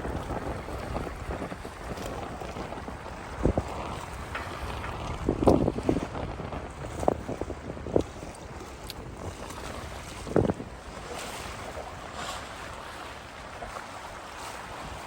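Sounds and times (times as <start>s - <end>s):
wind buffeting microphone: 0.0s - 15.0s
ocean surf: 8.2s - 15.0s.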